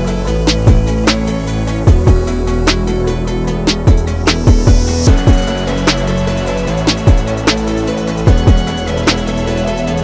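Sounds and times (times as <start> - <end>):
deep kick drums: 0.5 - 3.0, 3.7 - 6.2, 6.9 - 7.7, 8.3 - 8.8.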